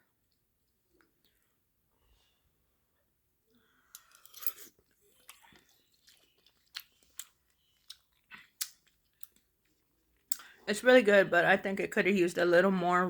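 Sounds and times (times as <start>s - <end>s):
wet chewing: 4.3s - 10.5s
lip smacks: 4.5s - 10.6s.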